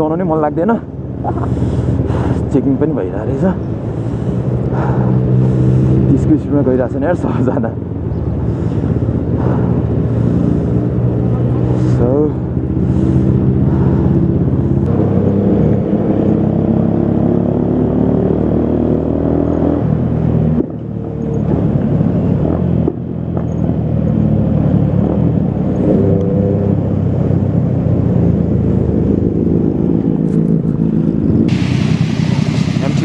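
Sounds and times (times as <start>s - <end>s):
motorcycle engine running: 0.0s - 16.1s, 26.8s - 33.0s.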